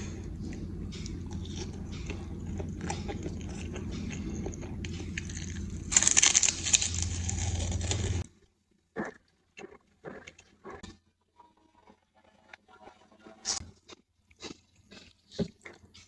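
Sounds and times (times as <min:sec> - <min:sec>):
steady low hum: 0:00.0 - 0:08.3
crunching and chewing: 0:00.0 - 0:08.4, 0:09.0 - 0:11.0, 0:13.4 - 0:16.0.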